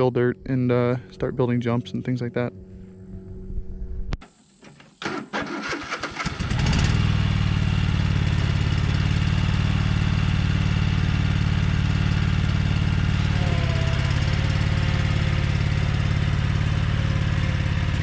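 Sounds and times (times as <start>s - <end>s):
mower engine running: 4.2s - 18.0s.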